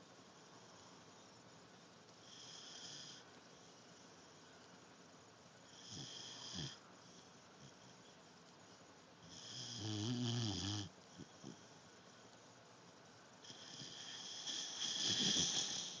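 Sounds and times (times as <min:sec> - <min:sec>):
dog snoring: 0:02.2 - 0:03.3, 0:05.6 - 0:08.0, 0:09.2 - 0:11.8, 0:13.4 - 0:16.0.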